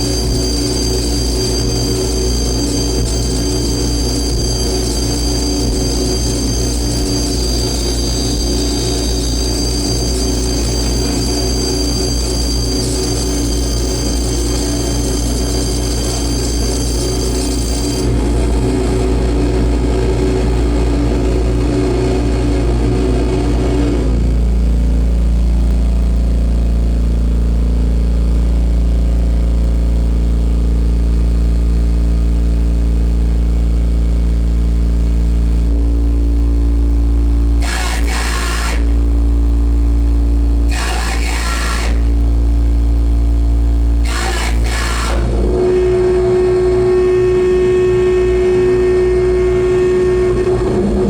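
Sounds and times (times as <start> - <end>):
noise music bass drone: 0.0 - 51.0
harsh hiss bursts: 37.6 - 39.0, 40.7 - 42.2, 44.0 - 45.3.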